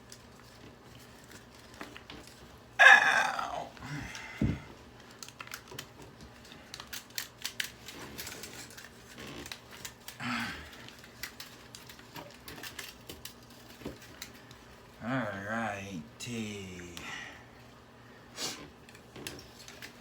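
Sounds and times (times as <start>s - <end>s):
plastic clicks snaps and cracks: 5.0s - 10.2s.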